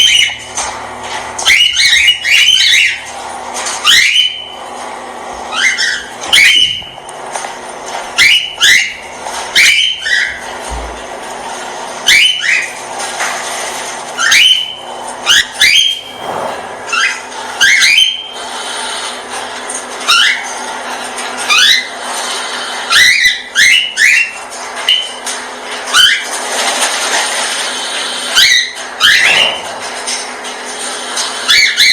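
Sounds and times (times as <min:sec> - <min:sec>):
cockatiel whistled calls: 0:01.4 - 0:03.0, 0:03.8 - 0:04.5, 0:05.5 - 0:07.1, 0:08.2 - 0:10.4, 0:12.1 - 0:12.8, 0:14.2 - 0:16.2, 0:16.9 - 0:18.4, 0:22.9 - 0:25.1.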